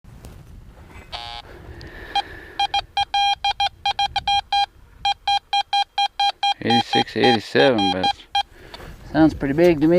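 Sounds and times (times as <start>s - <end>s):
metal detector buzzy tone: 1.1s - 1.4s, 2.1s - 8.5s
metal detector sharp beeps: 1.2s - 1.4s, 2.1s - 8.5s.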